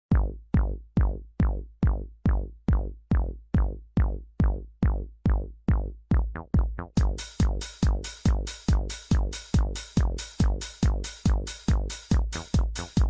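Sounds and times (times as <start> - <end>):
kick drum beating: 0.1 - 13.0
electronic dance music: 7.0 - 13.0
hi-hats: 7.0 - 13.0.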